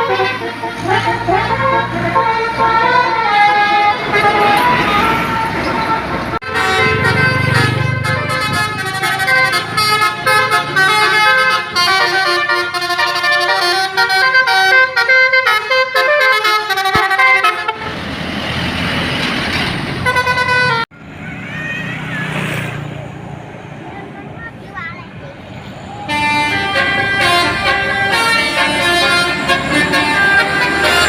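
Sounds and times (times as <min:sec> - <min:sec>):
bus horn playing a tune: 0:00.0 - 0:18.1, 0:20.0 - 0:20.9, 0:26.0 - 0:31.0.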